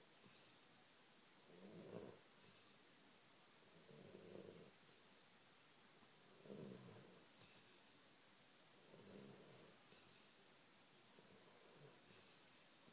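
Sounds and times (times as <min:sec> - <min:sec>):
soft snoring: 0:01.4 - 0:02.8, 0:03.6 - 0:04.8, 0:06.2 - 0:07.8, 0:08.7 - 0:10.4, 0:11.1 - 0:12.5.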